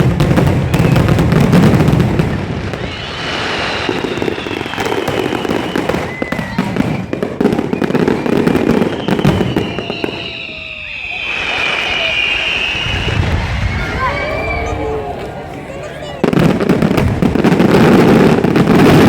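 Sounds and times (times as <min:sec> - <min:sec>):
fireworks bangs and crackles: 0:00.0 - 0:19.0
fireworks whistling: 0:00.0 - 0:19.0.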